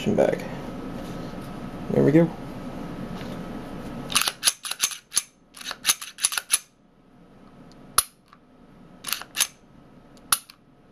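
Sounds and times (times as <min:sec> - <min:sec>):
pistol metallic clicks: 0:04.1 - 0:06.7, 0:08.0 - 0:08.4, 0:09.1 - 0:09.6, 0:10.2 - 0:10.6.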